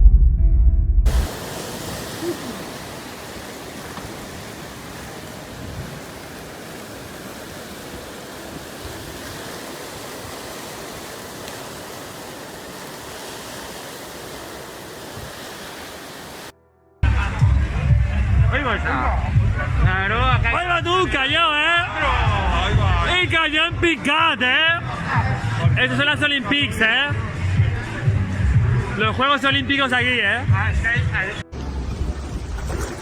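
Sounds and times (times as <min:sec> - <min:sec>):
heavy rain pouring: 0:01.1 - 0:16.5.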